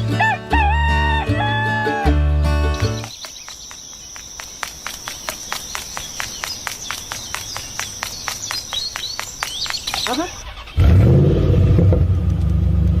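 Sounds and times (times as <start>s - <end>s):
short insect chirps: 2.8s - 10.6s
insects trilling: 2.8s - 10.8s.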